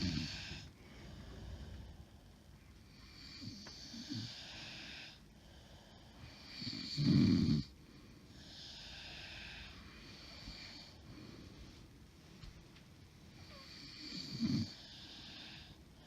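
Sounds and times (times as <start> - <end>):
woman snoring: 0.0 - 0.7, 3.0 - 5.2, 6.3 - 7.7, 13.4 - 15.8.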